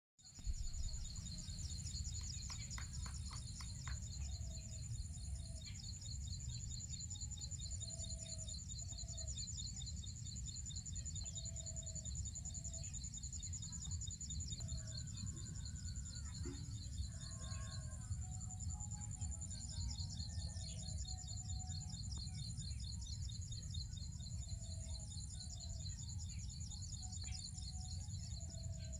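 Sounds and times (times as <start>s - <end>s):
low rumble: 0.4s - 1.8s
insect chirring: 0.4s - 28.9s.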